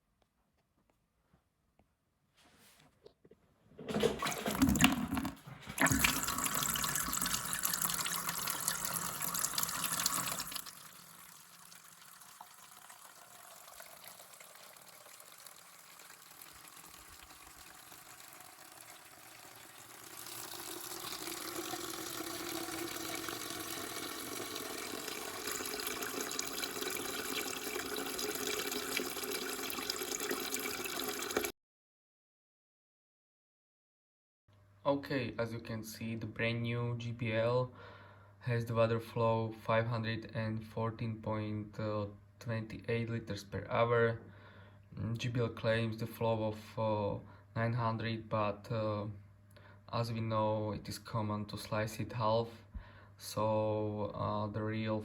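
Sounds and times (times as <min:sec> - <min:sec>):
water running into container: 0:03.9 - 0:31.5.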